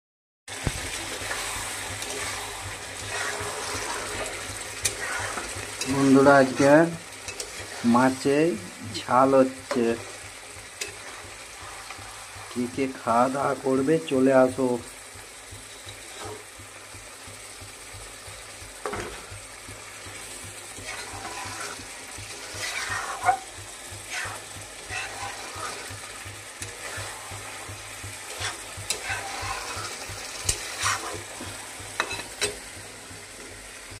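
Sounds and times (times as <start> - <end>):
fish sizzling in hot oil: 0.5 - 34.0
utensil scraping and clinking on pan: 1.1 - 8.2, 10.8 - 12.6, 20.7 - 32.6.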